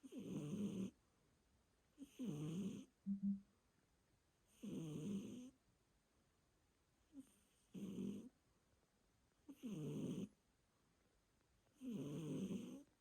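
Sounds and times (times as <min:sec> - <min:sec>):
cat snoring: 0:00.0 - 0:01.0, 0:02.0 - 0:02.9, 0:04.5 - 0:05.5, 0:07.2 - 0:08.3, 0:09.5 - 0:10.3, 0:11.8 - 0:12.9.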